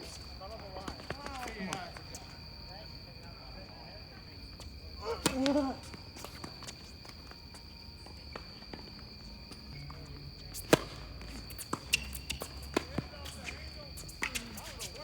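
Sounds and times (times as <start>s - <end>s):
footsteps and shoe scuffs: 5.6s - 15.0s
tennis ball strike: 10.6s - 13.1s.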